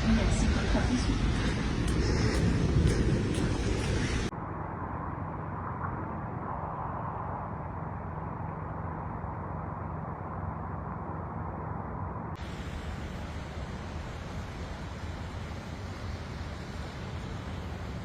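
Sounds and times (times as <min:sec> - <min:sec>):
muffled rumbling: 0:00.0 - 0:07.8.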